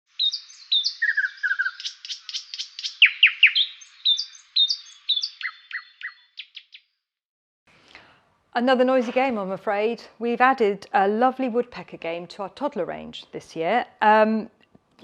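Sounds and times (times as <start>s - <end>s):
bird chirps and whistles: 0.2s - 6.9s.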